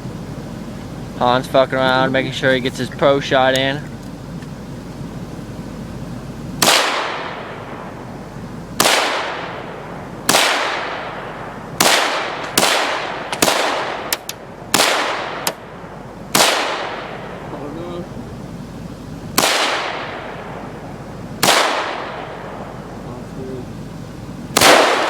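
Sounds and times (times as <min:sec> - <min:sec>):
rifle shots with rolling echo: 0:06.6 - 0:17.6, 0:19.2 - 0:23.1, 0:24.5 - 0:25.0.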